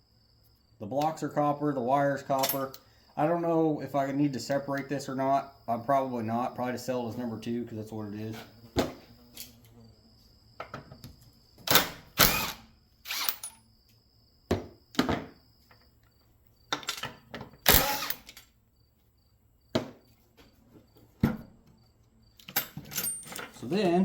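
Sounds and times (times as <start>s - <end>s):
impact driver running: 12.2s - 13.4s, 17.7s - 18.3s.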